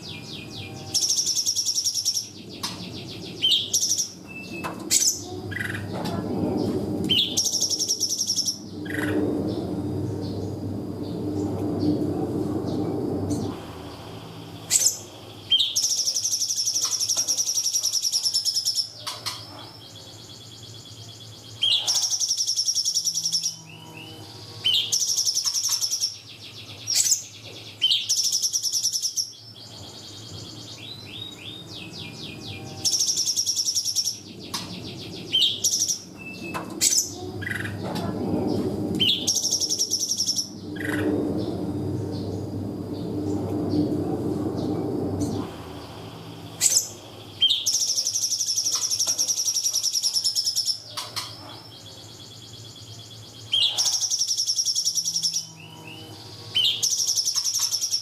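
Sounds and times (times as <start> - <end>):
songbird trilling: 45.8 - 58.0.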